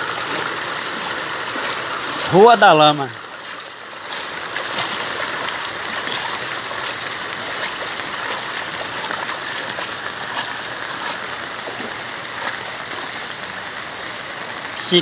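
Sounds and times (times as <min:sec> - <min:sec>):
small water splashes: 0:00.0 - 0:14.2
floodwater rushing: 0:00.0 - 0:14.7
rain falling: 0:00.0 - 0:15.0.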